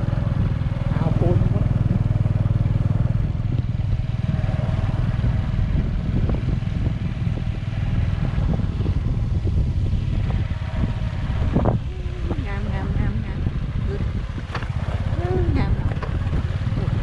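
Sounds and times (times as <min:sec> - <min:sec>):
motorcycle engine drone: 0:00.0 - 0:17.0.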